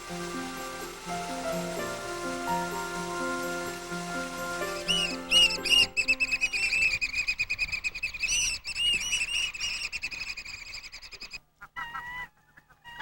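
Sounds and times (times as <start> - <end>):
lower bird calls: 4.7 - 11.4
high chattering bird chirps: 4.8 - 11.4.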